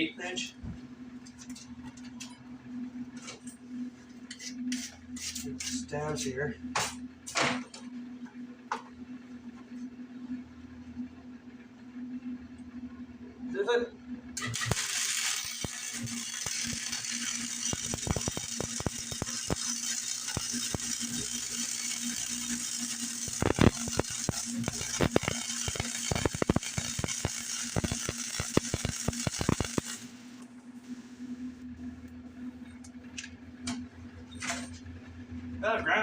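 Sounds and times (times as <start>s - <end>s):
low steady hum: 0.0s - 36.0s
welding arc crackling: 14.4s - 31.6s.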